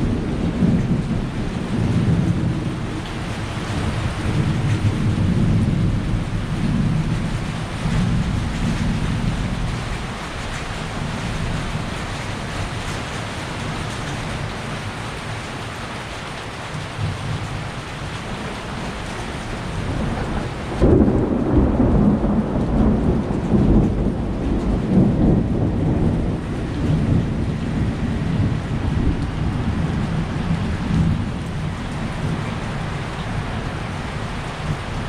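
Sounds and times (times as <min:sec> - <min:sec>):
thunder clap and rumble: 0:00.0 - 0:15.4, 0:16.7 - 0:35.0
heavy rain: 0:00.0 - 0:35.0.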